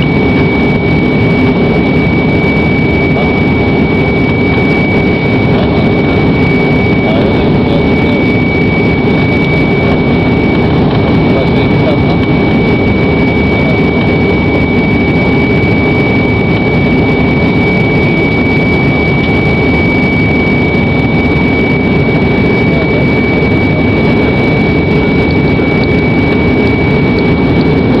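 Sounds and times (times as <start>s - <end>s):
high-pitched engine whine: 0.0s - 28.0s
jet engines in cabin: 0.0s - 28.0s.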